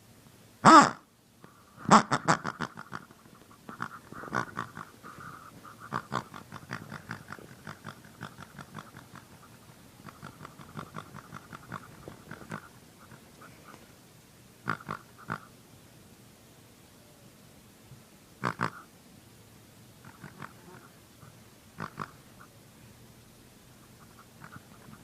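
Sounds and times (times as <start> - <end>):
pig snoring and grunting: 3.8 - 4.9, 5.9 - 9.4, 10.0 - 12.7, 14.7 - 15.4, 18.4 - 18.8, 20.0 - 20.9, 21.8 - 22.2.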